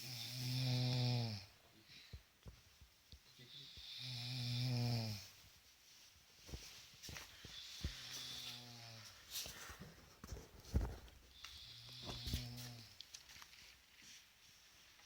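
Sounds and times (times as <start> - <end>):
person snoring: 0.0 - 1.5, 3.5 - 5.3.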